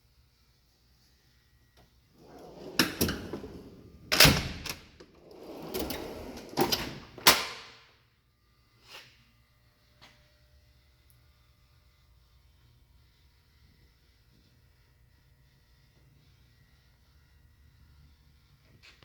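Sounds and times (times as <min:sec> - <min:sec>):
steel drawers sliding: 0:02.2 - 0:07.2
metal drawer clunks: 0:02.3 - 0:07.6.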